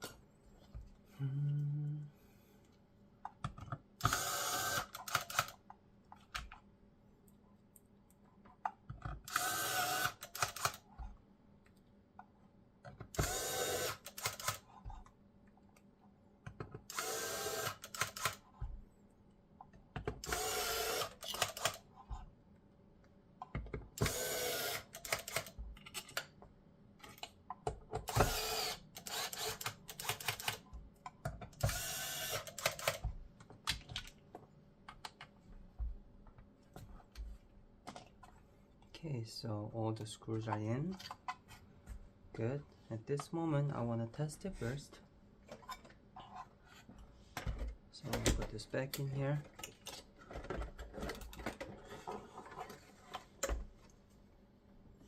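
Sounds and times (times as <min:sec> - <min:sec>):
electric screwdriver whirring: 0:04.0 - 0:05.5, 0:09.3 - 0:10.8, 0:13.2 - 0:14.6, 0:16.9 - 0:18.4, 0:20.2 - 0:21.8, 0:24.0 - 0:25.5, 0:28.0 - 0:30.6, 0:31.6 - 0:33.0.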